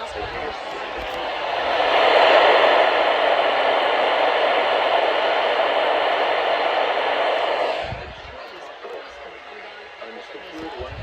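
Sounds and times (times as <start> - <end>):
radio static hiss: 0.0 - 11.0.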